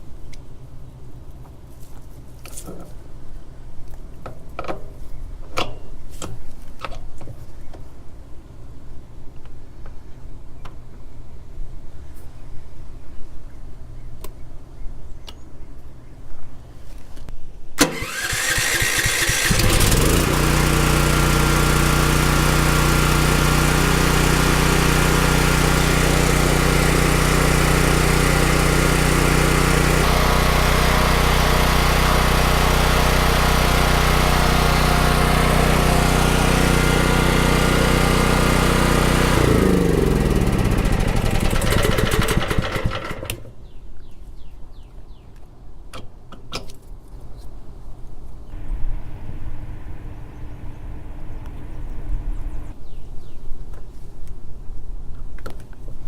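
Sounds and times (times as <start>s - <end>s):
generator spinning down: 17.8s - 43.3s, 48.6s - 52.7s
generator engine running: 17.8s - 43.4s, 48.6s - 52.7s.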